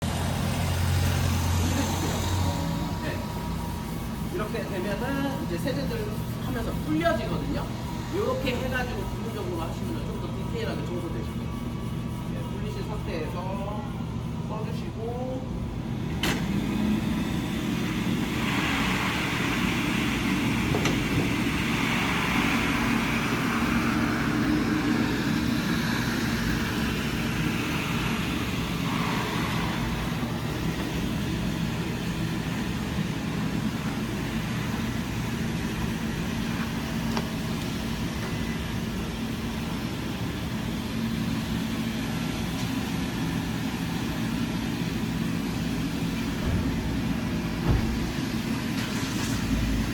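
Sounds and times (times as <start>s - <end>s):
floor scrubber motor hum: 0.0s - 10.8s, 15.8s - 40.8s
hiss of scrubbing and suction: 16.8s - 31.4s.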